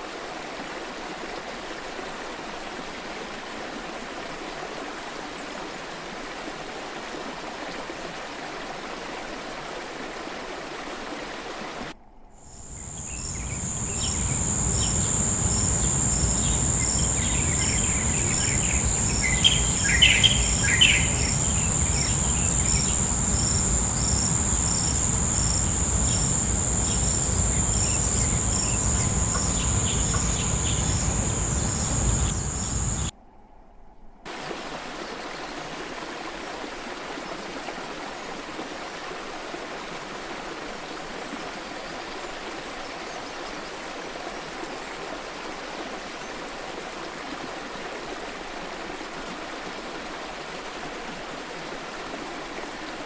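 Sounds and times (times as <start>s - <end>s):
rushing water hiss: 0.0s - 12.0s, 12.6s - 33.1s, 34.3s - 53.0s
low rumble of water: 11.8s - 33.2s
bird chirps: 12.5s - 33.1s
high insect trill: 12.5s - 33.1s.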